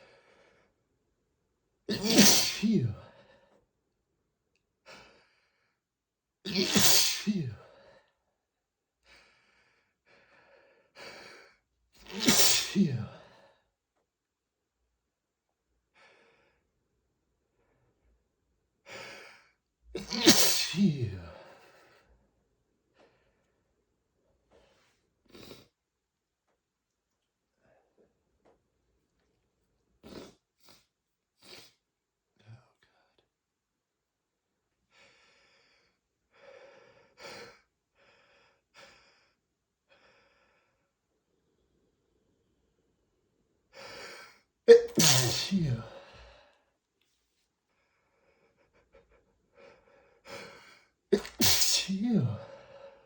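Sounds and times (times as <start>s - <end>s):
person sneezing: 1.9s - 3.1s, 6.5s - 7.7s, 12.0s - 13.2s, 20.0s - 21.8s, 44.7s - 46.4s, 51.2s - 52.8s.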